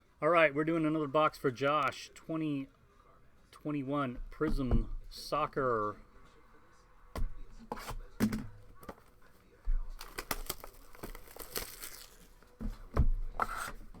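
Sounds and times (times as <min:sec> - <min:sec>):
plastic wrap tearing and crinkling: 0:09.9 - 0:12.6.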